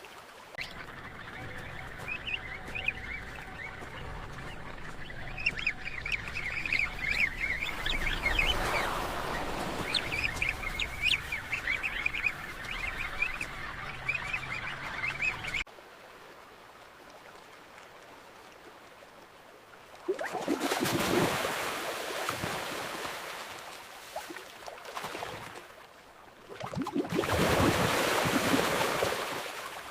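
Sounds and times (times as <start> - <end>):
rush of water: 0.0 - 0.6, 3.2 - 11.8, 15.5 - 29.9.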